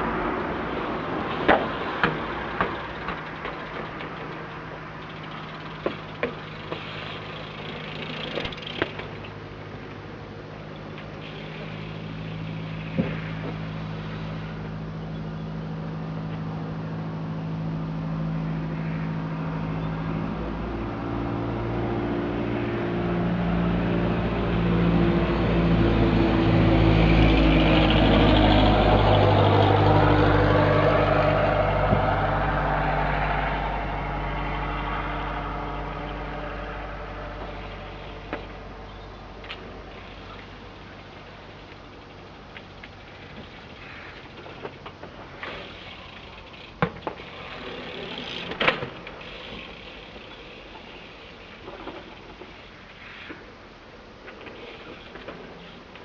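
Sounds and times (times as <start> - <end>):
vehicle engine running: 0.0 - 21.6, 23.1 - 48.5.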